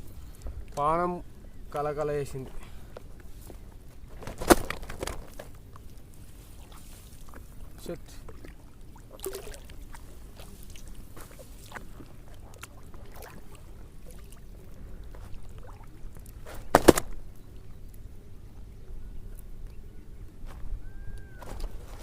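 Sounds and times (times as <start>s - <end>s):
water sloshing: 2.4s - 17.8s.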